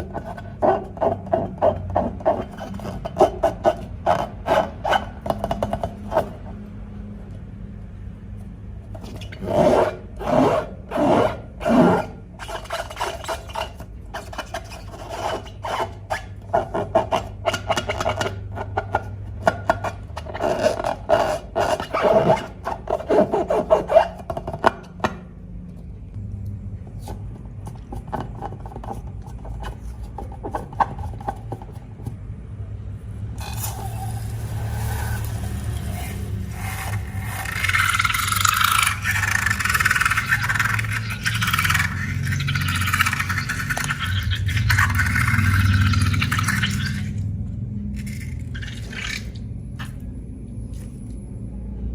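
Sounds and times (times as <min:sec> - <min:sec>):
hand scraping slime: 0:00.0 - 0:06.4, 0:08.9 - 0:24.8, 0:33.4 - 0:47.3, 0:47.9 - 0:50.1
low steady hum: 0:25.2 - 0:51.9.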